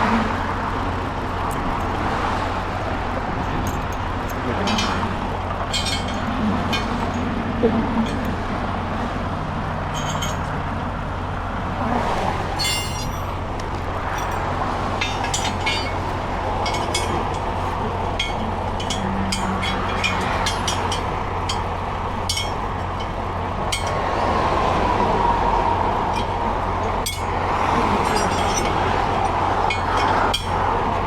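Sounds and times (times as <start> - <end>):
heavy highway traffic: 0.0 - 31.0
wrench clinking on truck wheel: 3.4 - 8.6, 9.8 - 10.7, 12.5 - 24.3, 26.1 - 31.0.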